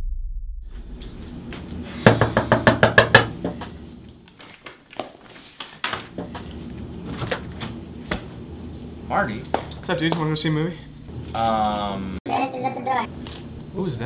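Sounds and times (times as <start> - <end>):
rapid knocking on a door: 2.0 - 3.5.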